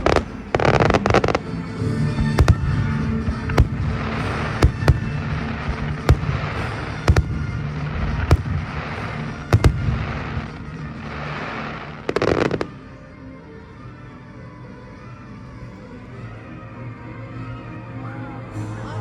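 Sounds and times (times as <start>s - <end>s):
fireworks crackle: 0.0s - 1.6s, 2.2s - 12.8s
fireworks bangs: 0.0s - 12.8s
fireworks pops: 2.2s - 10.8s.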